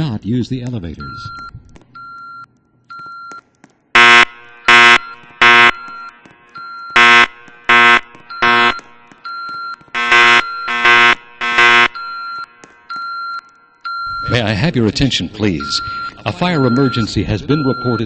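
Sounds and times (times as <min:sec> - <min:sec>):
faint high beeping tone: 0:01.0 - 0:03.4, 0:15.1 - 0:18.0
fire alarm horns buzzing: 0:04.0 - 0:18.0.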